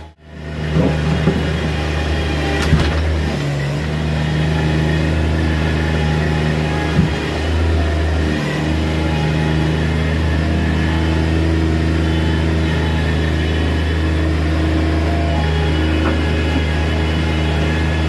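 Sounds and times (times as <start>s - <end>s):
loader diesel engine running: 0.0s - 18.0s.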